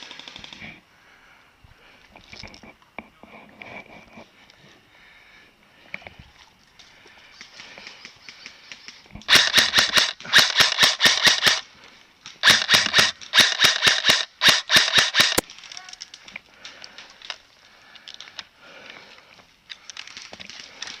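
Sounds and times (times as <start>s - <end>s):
airsoft gun full-auto bursts: 9.3s - 11.6s, 12.4s - 15.4s.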